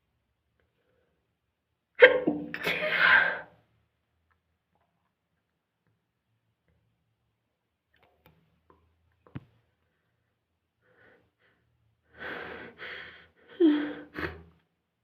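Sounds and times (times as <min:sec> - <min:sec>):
person sneezing: 0:02.0 - 0:03.5.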